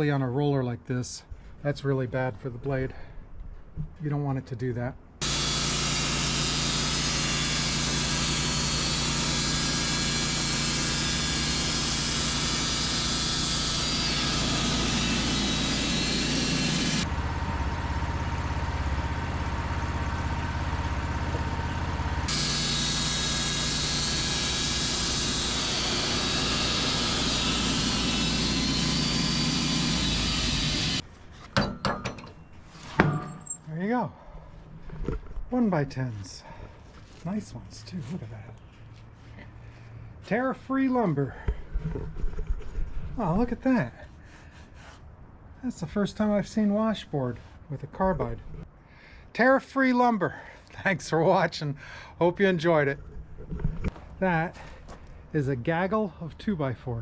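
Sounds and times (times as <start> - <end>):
band sawmill cutting lumber: 5.2 - 31.0.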